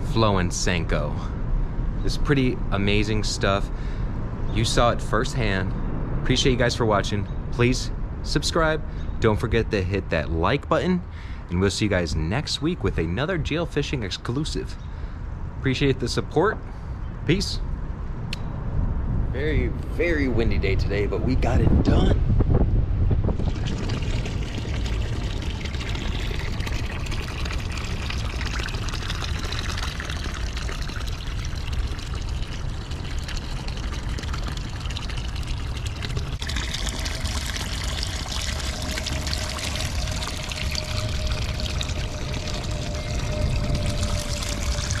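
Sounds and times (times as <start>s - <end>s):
faint steady hum: 23.1s - 45.0s
water trickling and splashing: 23.3s - 45.0s
low rumble: 34.2s - 45.0s.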